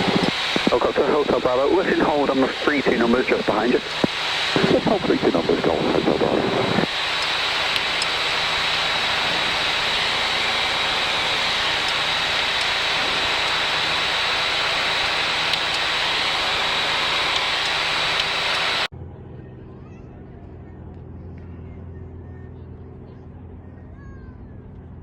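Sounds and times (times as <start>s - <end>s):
thin high whine: 0.0s - 18.9s
aircraft engine droning: 0.0s - 25.0s.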